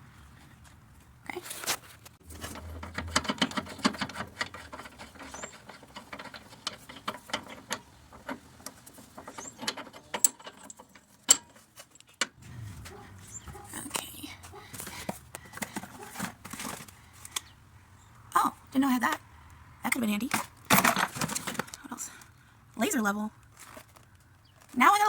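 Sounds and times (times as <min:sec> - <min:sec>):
tools clicking and rattling: 0:02.2 - 0:17.5, 0:19.9 - 0:21.8.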